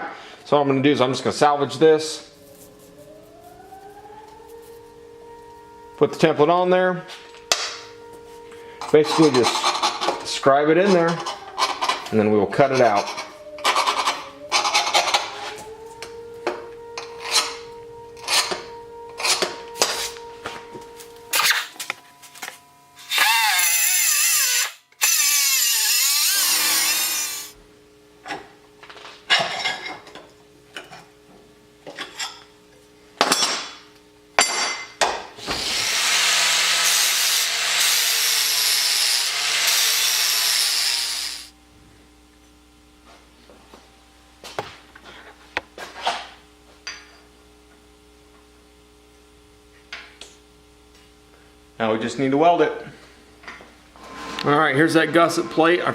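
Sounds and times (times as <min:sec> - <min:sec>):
power tool cutting steel plate: 0:23.0 - 0:27.6, 0:35.4 - 0:41.5.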